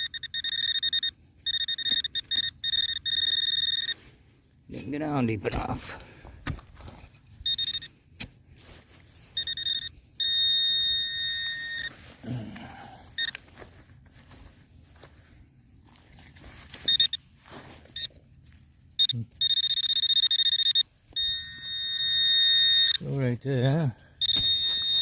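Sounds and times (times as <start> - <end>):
pinpointer electronic alarm tone: 0.0 - 4.2, 7.4 - 8.0, 9.2 - 13.5, 16.7 - 18.2, 18.9 - 23.2, 23.9 - 25.0
faint knocks and soil scraping: 3.8 - 10.2, 11.8 - 19.4, 22.9 - 25.0.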